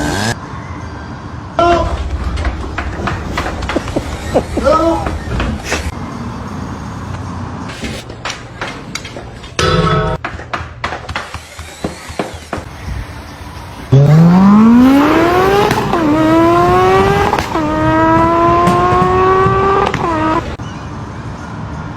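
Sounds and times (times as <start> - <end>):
engine accelerating hard: 0.0 - 0.6, 13.0 - 20.6
knocks: 14.9 - 20.4.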